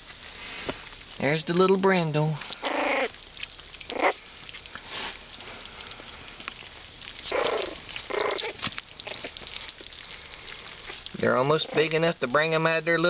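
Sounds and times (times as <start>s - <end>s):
scratchy clicks of puppies moving: 0.0s - 13.0s
puppies whimpering and yelping: 2.5s - 11.9s.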